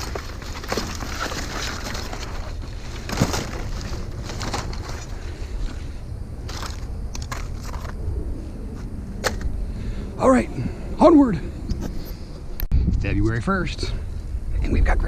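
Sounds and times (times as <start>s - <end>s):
knocks and rustling of debris: 0.0s - 5.8s, 6.4s - 8.0s
steady low rumble: 2.1s - 15.0s.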